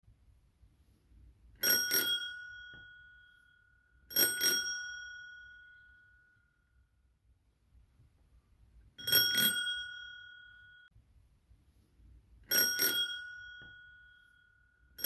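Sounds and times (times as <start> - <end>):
bicycle bell ringing: 1.6 - 6.4, 9.0 - 10.9, 12.5 - 15.0.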